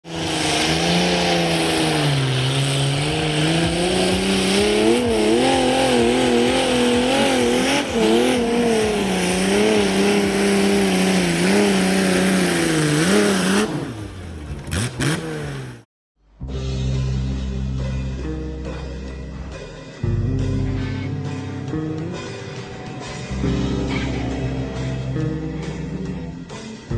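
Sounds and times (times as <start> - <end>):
tractor engine at high revs: 0.0 - 15.9.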